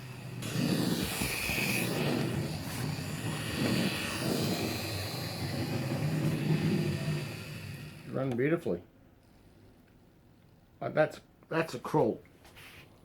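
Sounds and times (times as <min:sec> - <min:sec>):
model train motor whirring: 0:00.0 - 0:08.2.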